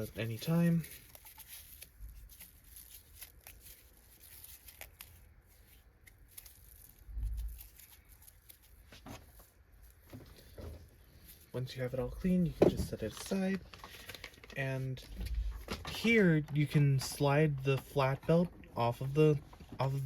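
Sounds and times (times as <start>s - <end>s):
hair tearing and scraping: 0.0s - 14.9s.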